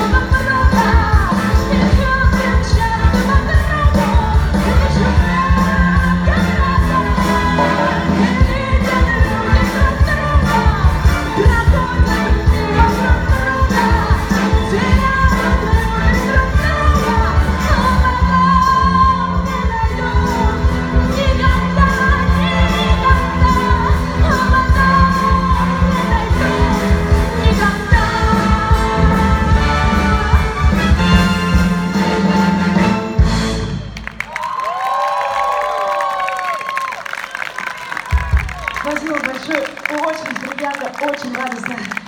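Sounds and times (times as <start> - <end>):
drum beat: 0.0 - 33.5, 38.0 - 39.2
live band playing upbeat pop: 0.0 - 33.9
bass: 0.0 - 34.6
audience clapping: 33.8 - 42.0
voices cheering: 34.2 - 42.0.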